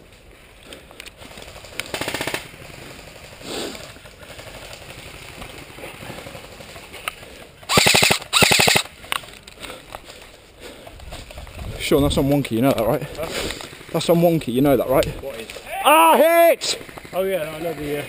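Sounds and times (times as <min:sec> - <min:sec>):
airsoft rifle firing bursts: 0:01.9 - 0:02.7, 0:07.7 - 0:08.9.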